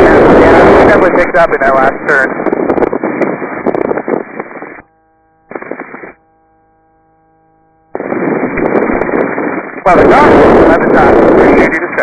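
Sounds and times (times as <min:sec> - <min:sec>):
electrical hum: 0:00.0 - 0:12.0
intercom cabin noise hiss: 0:08.0 - 0:12.0.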